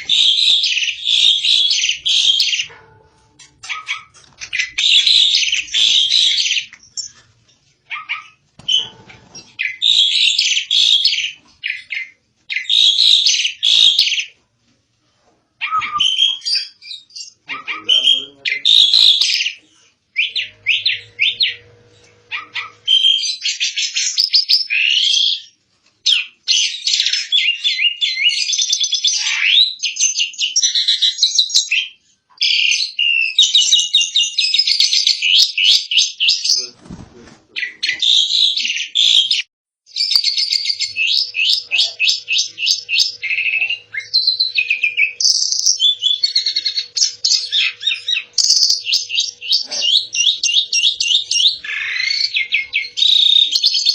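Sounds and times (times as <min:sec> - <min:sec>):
starling chattering song: 0:00.0 - 0:07.3, 0:07.9 - 0:14.3, 0:15.6 - 0:25.2, 0:37.6 - 0:53.9.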